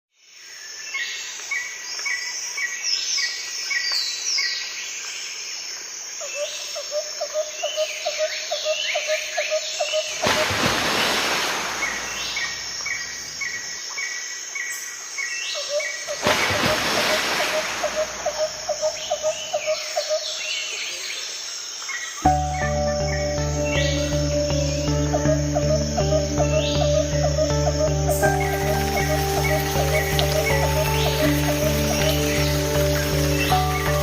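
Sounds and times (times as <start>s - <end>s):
birds singing and chirping: 7.3s - 34.0s.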